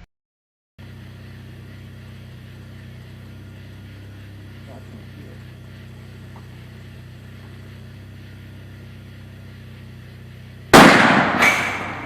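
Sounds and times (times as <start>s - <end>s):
steady low hum: 0.8s - 12.0s.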